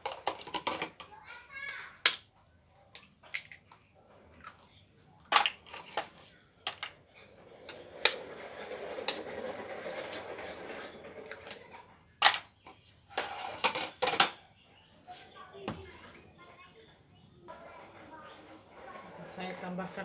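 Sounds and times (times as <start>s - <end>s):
rustling scraping noise: 7.2s - 11.9s, 13.1s - 14.2s, 17.5s - 20.0s.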